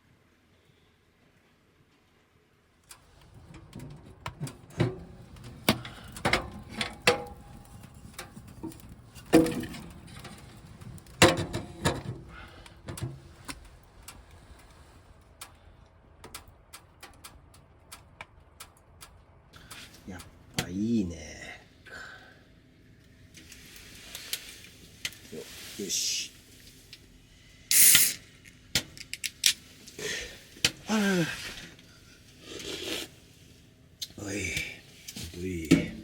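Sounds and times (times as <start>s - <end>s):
steady low hiss: 19.0s - 36.0s.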